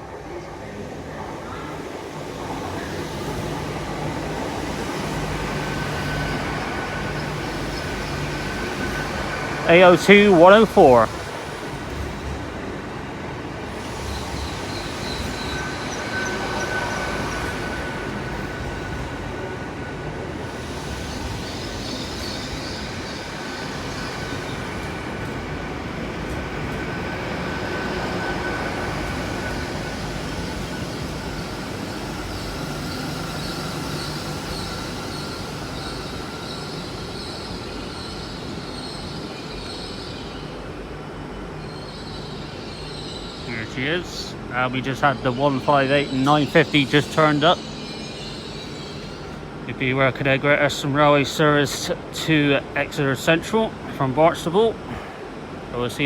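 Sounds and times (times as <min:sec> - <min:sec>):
passenger train moving: 0:00.0 - 0:56.0
steady high-pitched tone: 0:09.0 - 0:11.2.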